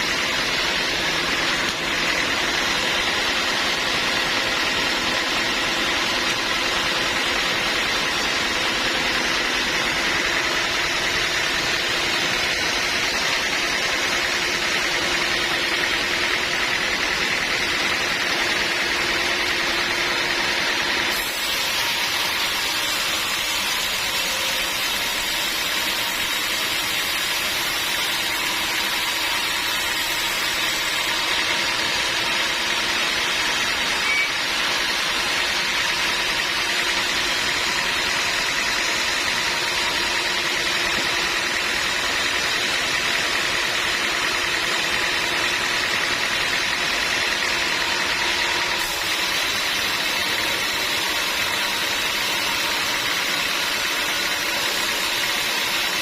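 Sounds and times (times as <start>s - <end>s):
sawmill machinery drone: 0.0s - 56.0s.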